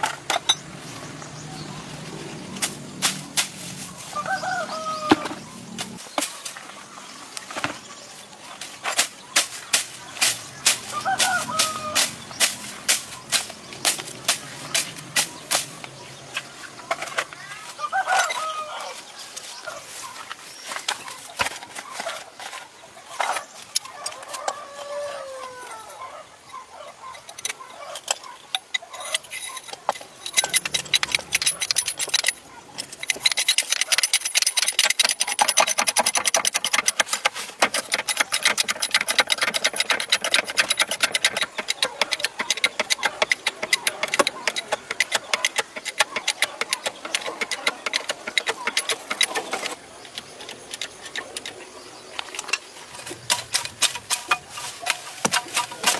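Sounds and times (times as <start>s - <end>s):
mechanical clicking and rattling: 27.2s - 55.9s.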